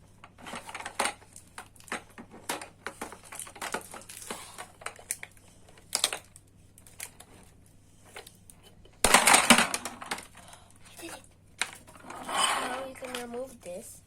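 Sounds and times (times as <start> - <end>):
plastic packaging crinkling: 2.8 - 7.5.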